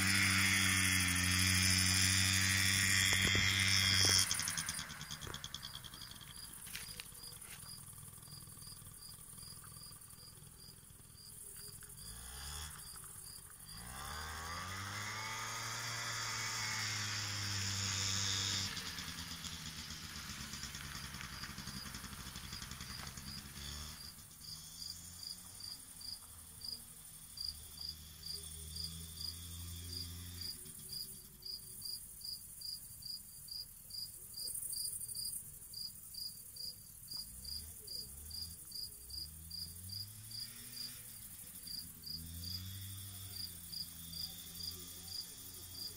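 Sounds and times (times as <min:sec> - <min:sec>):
scooter engine revving: 0:00.0 - 0:31.3, 0:37.2 - 0:45.9
crickets chirping: 0:03.1 - 0:14.8, 0:21.0 - 0:45.9.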